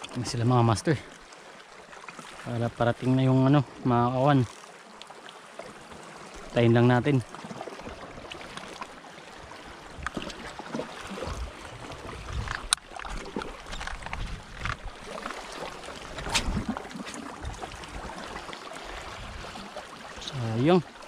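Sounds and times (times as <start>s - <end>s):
small waves lapping and splashing: 0.0s - 21.0s
wind gusts on microphone: 11.2s - 12.8s, 13.6s - 15.0s, 16.1s - 16.8s.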